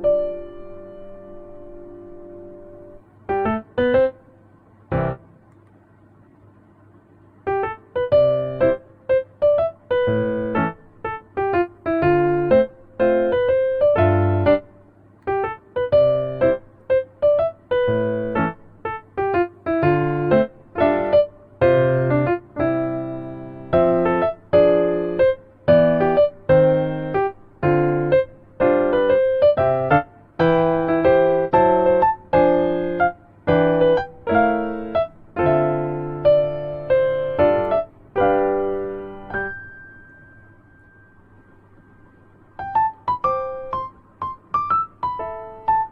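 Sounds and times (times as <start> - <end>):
keyboard music detached chords: 7.5 - 14.7, 15.3 - 45.9.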